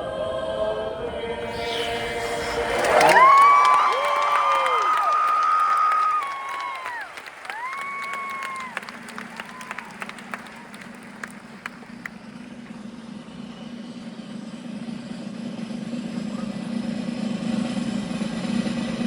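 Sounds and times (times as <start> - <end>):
audience clapping: 2.6 - 12.8.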